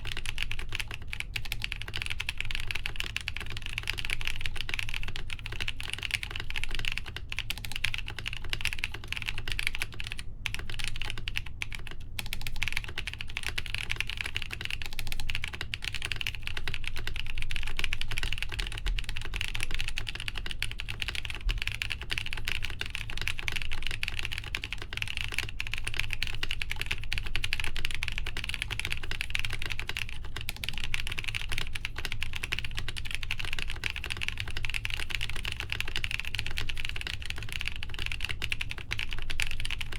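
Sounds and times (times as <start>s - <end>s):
typing on mechanical keyboard: 0.0s - 39.9s.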